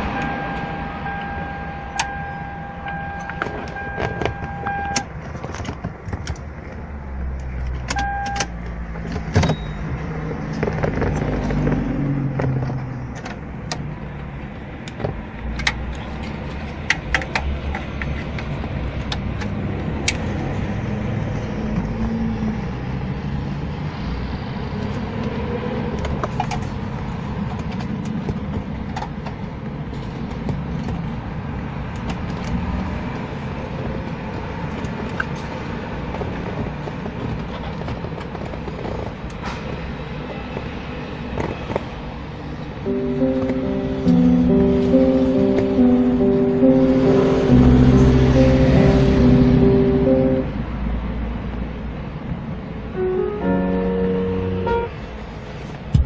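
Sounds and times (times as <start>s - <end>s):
electronic warning beep: 0.0s - 5.1s, 8.0s - 8.5s
steady low rumble: 52.9s - 56.0s.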